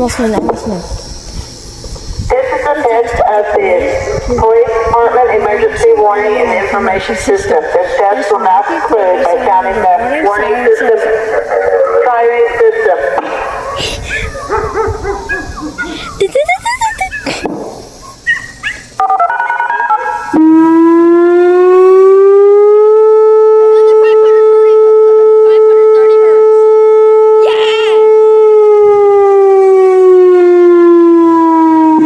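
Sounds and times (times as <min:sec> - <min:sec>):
warning siren rising and falling: 0:19.0 - 0:32.0.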